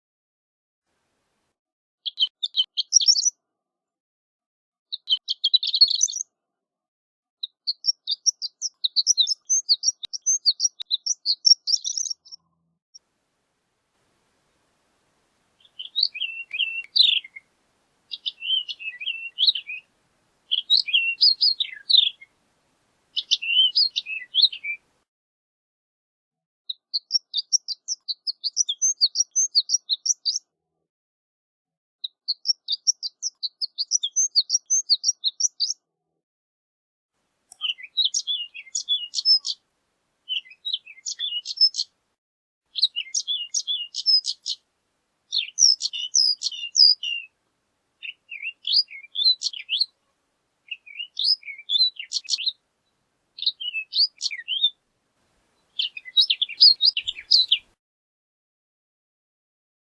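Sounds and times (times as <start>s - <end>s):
lark singing: 2.1s - 3.4s, 4.9s - 6.3s, 7.4s - 12.5s, 15.6s - 19.9s, 20.5s - 22.4s, 23.1s - 24.9s, 26.7s - 30.4s, 32.3s - 35.8s, 37.5s - 39.6s, 40.3s - 41.9s, 42.8s - 44.6s, 45.3s - 47.4s, 48.0s - 50.0s, 50.6s - 52.6s, 53.4s - 54.8s, 55.6s - 57.8s.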